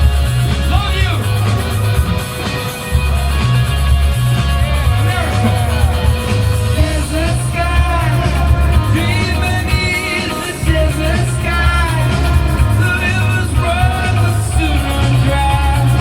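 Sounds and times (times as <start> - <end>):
heavy boomy bass line: 0.0 - 16.0
rock band playing live: 0.0 - 16.0
person singing: 4.7 - 16.0.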